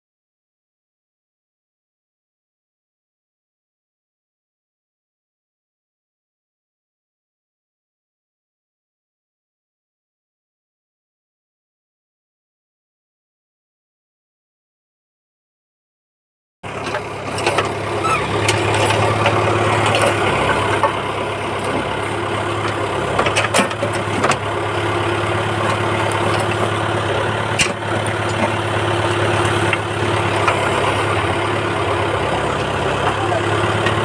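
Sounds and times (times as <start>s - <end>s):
engine idling: 16.6s - 34.0s.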